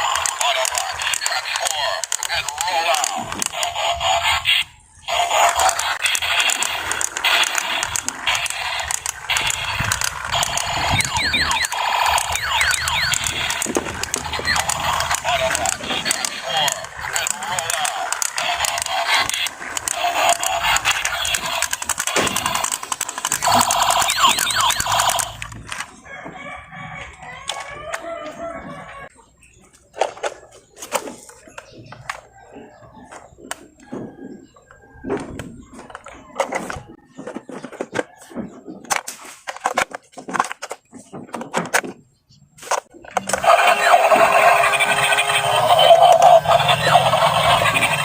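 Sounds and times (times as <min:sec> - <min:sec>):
toy train motor whirring: 0:00.0 - 0:25.9, 0:43.2 - 0:48.0
loud rapid buzzing: 0:05.1 - 0:25.5
rooster crowing: 0:26.0 - 0:29.1.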